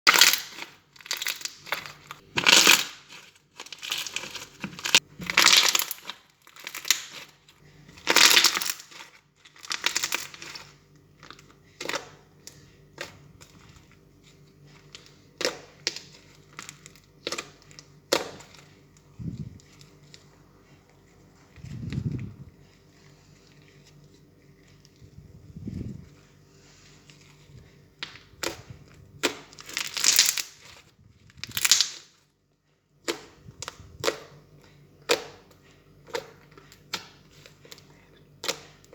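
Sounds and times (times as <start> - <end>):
slime squishing: 0.1 - 32.3, 32.9 - 38.9
slime popping and clicking: 31.4 - 32.0.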